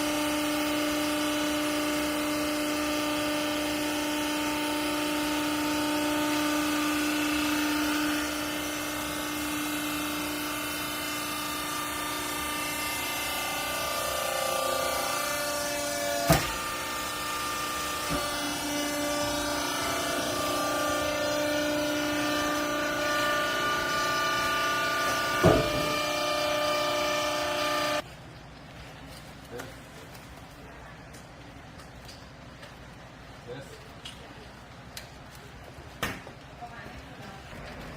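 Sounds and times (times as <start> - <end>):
hydraulic pump motor whine: 0.0 - 28.0.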